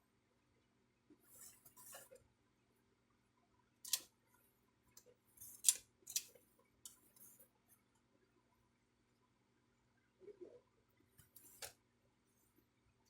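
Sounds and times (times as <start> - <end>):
plastic printer parts clicking: 3.9 - 4.1, 5.4 - 6.3.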